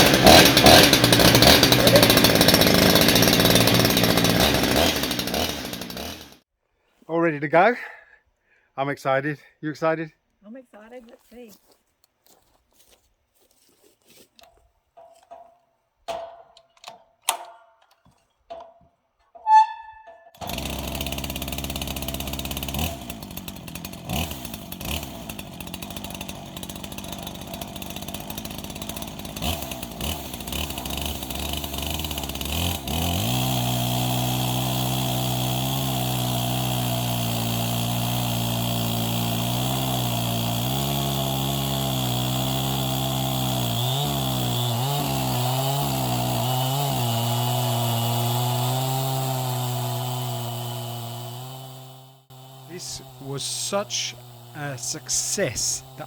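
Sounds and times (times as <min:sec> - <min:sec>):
chainsaw cutting through log: 0:00.0 - 0:06.4, 0:19.4 - 0:56.0
clicks and knocks: 0:15.0 - 0:19.4.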